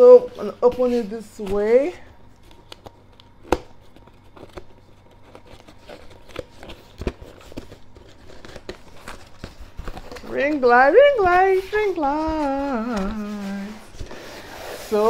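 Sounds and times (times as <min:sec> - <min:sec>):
packaging crinkling and tearing: 0:02.4 - 0:14.5.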